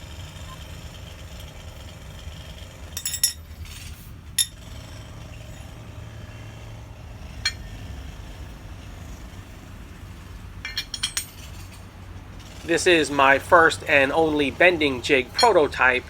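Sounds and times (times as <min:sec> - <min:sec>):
steel tool parts clinking: 0:03.0 - 0:04.6, 0:10.6 - 0:11.9, 0:12.7 - 0:16.0.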